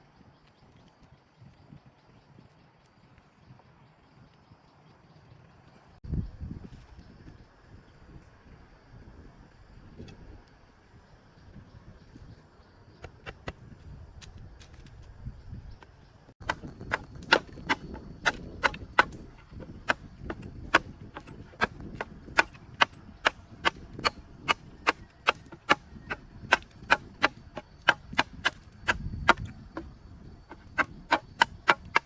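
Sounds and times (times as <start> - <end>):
sharp chopping strikes: 16.4 - 29.9, 30.5 - 32.0.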